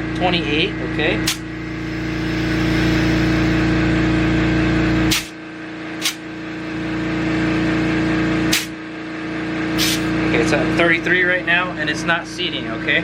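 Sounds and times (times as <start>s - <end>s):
compressed air rushing into tyre: 1.3s - 4.4s, 5.0s - 5.4s, 6.0s - 6.3s, 9.8s - 10.1s
inflator click: 6.0s - 6.2s, 9.8s - 10.1s.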